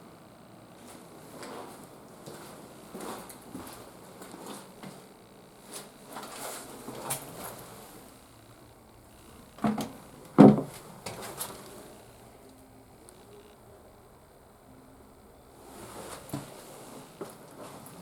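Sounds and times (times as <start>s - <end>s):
soft knocks: 9.6s - 10.8s.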